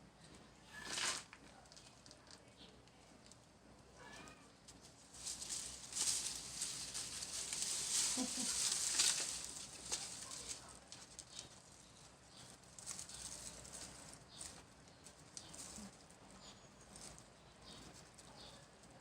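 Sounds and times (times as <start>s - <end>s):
dry leaves rustling and crackling: 4.6s - 19.0s.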